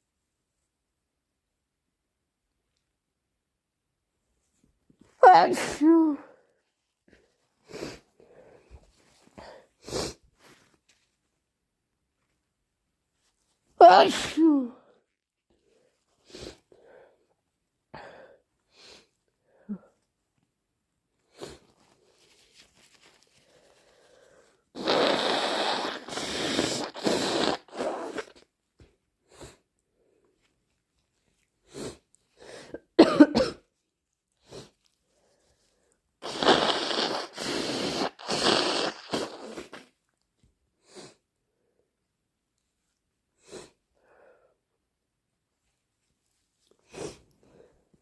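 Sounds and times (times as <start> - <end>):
person sneezing: 5.2 - 6.3, 13.8 - 14.8, 24.8 - 28.4, 32.7 - 33.7, 36.2 - 39.9
person blowing nose: 7.6 - 8.0, 9.4 - 10.7, 13.8 - 14.6, 21.3 - 22.4, 23.3 - 28.5, 31.7 - 32.7, 36.2 - 40.0, 40.8 - 41.2, 43.4 - 43.8, 46.8 - 47.3.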